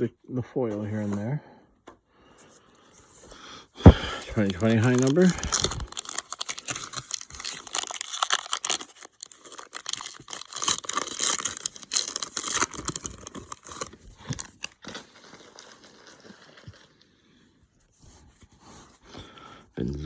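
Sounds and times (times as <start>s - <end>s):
card pack wrapper tearing: 4.0s - 14.9s.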